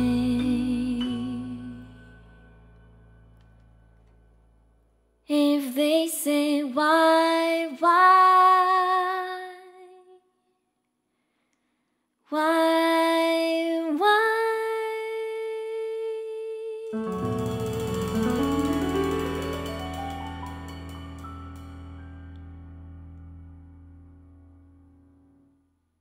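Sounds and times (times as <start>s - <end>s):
woman singing wordlessly: 0.0s - 2.0s, 5.3s - 10.2s, 12.3s - 18.7s
piano bass and drums: 17.0s - 24.7s.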